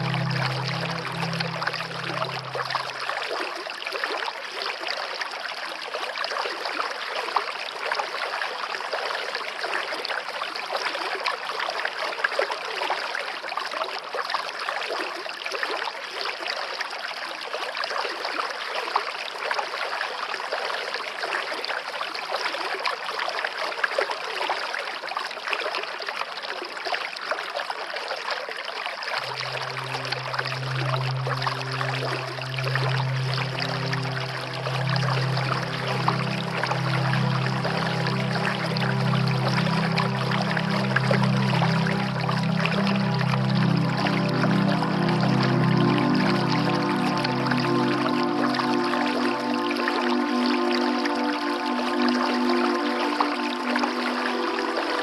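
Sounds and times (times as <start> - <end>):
low background music: 0.0 - 3.2, 29.2 - 55.0
stream water trickling: 0.0 - 55.0.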